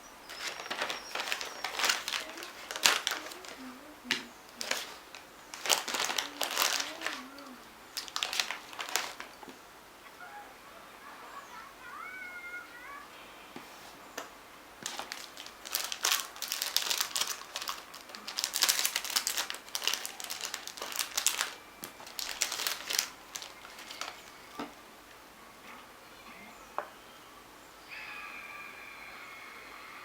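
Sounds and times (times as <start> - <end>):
packaging crinkling and rustling: 0.2 - 9.6, 14.1 - 24.8.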